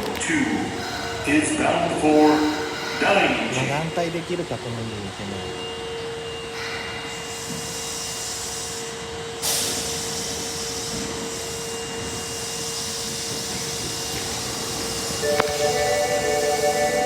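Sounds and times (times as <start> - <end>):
subway car hum: 0.0 - 17.0
air hissing: 0.5 - 4.4, 6.4 - 15.4.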